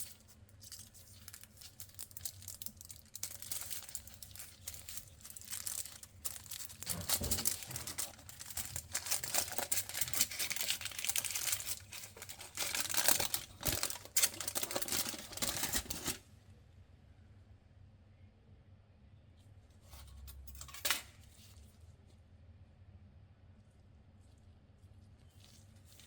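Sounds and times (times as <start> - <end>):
wrapper crinkling and tearing: 0.0 - 16.2, 25.3 - 26.0.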